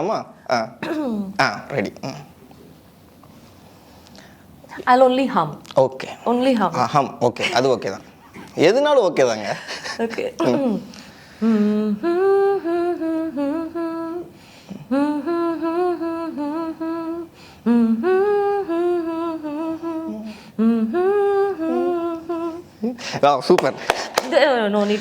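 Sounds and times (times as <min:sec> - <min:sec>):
woman humming: 0:00.8 - 0:01.4, 0:10.0 - 0:23.0.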